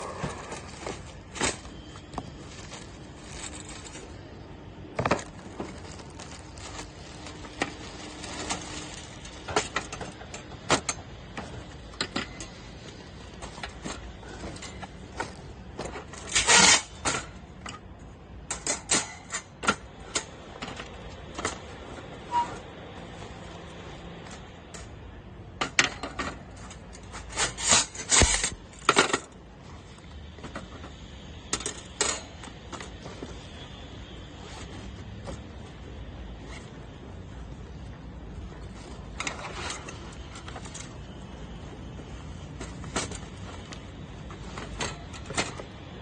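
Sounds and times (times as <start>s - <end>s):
rustling scrape: 0.0s - 9.5s, 12.4s - 17.1s, 26.5s - 28.9s, 31.9s - 37.8s, 38.4s - 45.3s
objects being handled: 0.0s - 17.8s.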